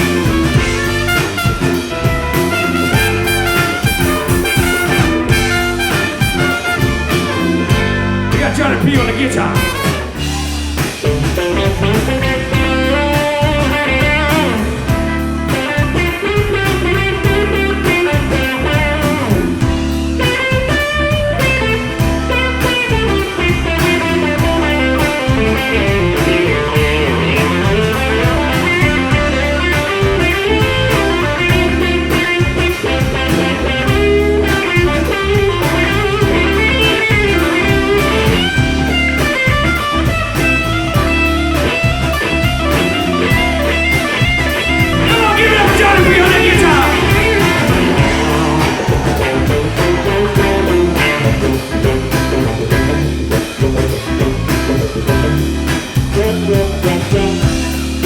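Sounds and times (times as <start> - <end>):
funk band bass and drum groove: 0.0 - 58.0
electric guitar solo: 20.2 - 56.5.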